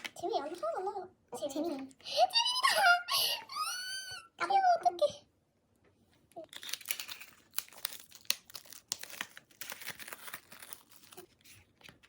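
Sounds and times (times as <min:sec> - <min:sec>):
packaging crinkling and tearing: 0:06.3 - 0:12.0.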